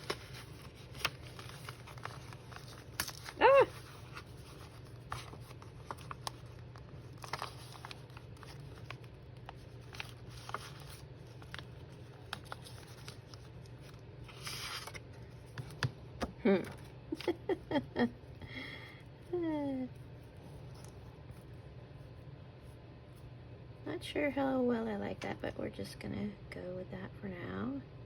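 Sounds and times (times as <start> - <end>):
paper rustling: 0.0 - 15.9.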